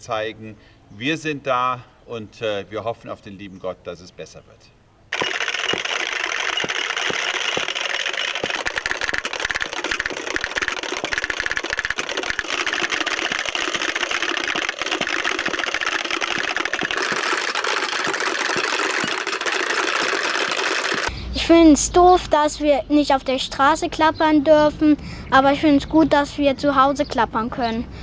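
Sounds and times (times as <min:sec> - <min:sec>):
wooden clappers rattling: 0:05.1 - 0:21.1.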